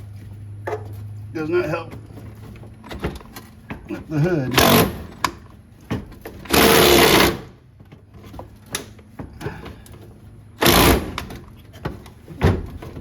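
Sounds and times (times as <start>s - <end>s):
ratchet wrench ratcheting: 6.5s - 7.5s.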